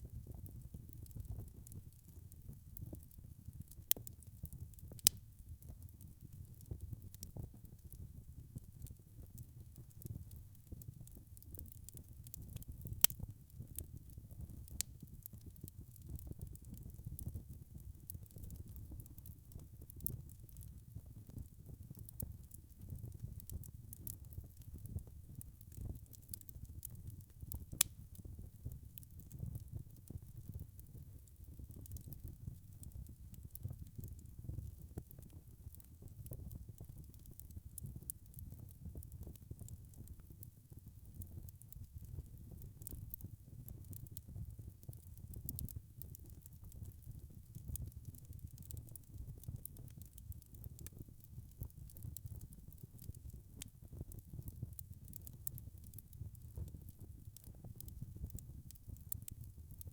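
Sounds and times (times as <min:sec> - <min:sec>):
low rumble of flame: 0:00.0 - 0:59.9
logs crackling in fireplace: 0:00.1 - 0:59.9
sharp wood fire pops: 0:04.9 - 0:05.2, 0:27.5 - 0:28.2.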